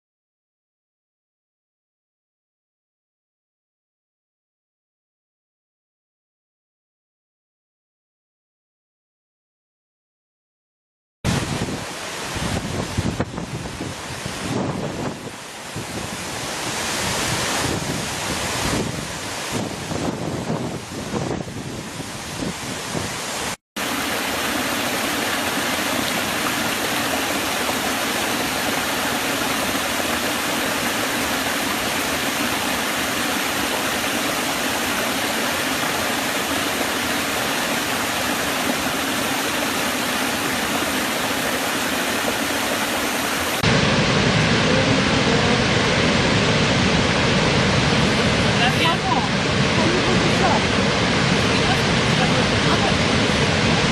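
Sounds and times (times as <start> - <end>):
waterfall rushing: 11.3 - 53.9.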